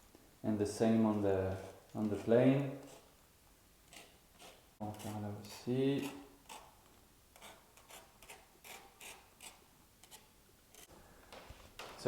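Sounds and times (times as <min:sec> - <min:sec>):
tool scratching foam: 0:01.5 - 0:03.2, 0:03.9 - 0:06.8, 0:07.4 - 0:10.9.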